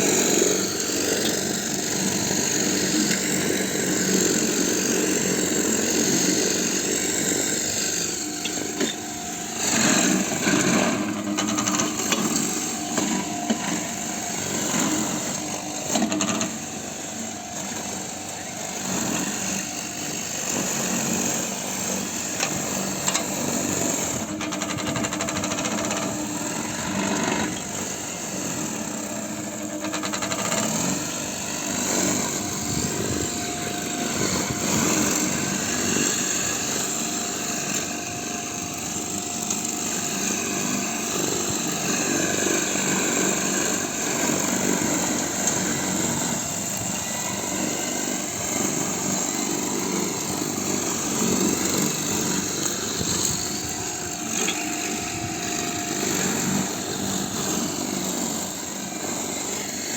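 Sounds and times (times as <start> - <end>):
lawn mower running: 0.0 - 59.9.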